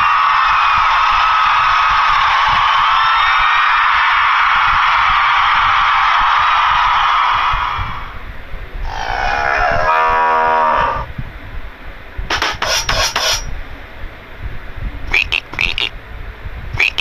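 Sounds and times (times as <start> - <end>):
cow mooing: 8.9 - 11.0
rasping strokes: 12.3 - 13.5.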